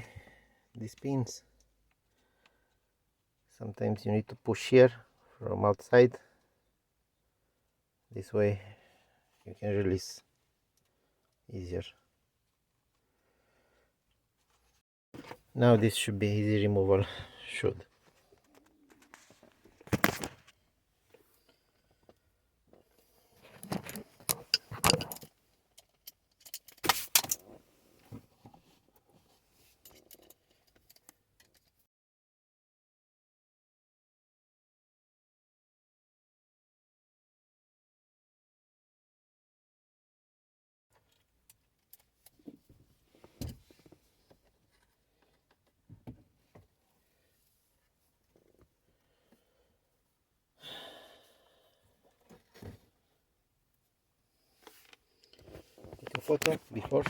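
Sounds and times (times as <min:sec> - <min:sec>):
plastic and metal parts clattering: 0:18.4 - 0:20.6, 0:23.4 - 0:27.6
hand tools and plastic parts clicking: 0:23.4 - 0:27.6, 0:29.7 - 0:31.8.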